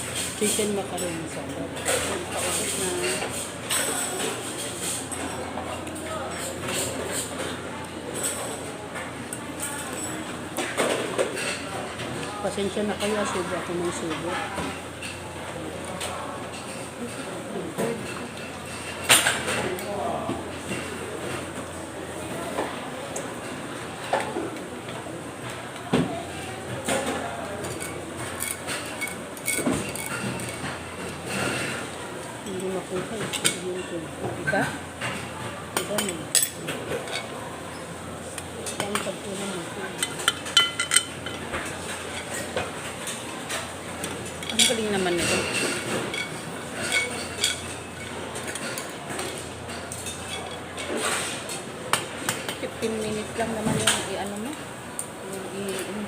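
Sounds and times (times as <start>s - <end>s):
dishes and utensils clinking: 0.0s - 21.8s, 22.4s - 56.0s
busy food court background: 0.0s - 56.0s.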